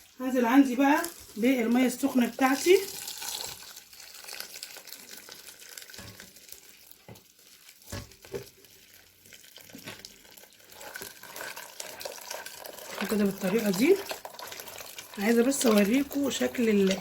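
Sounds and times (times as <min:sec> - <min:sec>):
hot water pouring splash: 0:02.2 - 0:06.2, 0:09.6 - 0:17.0.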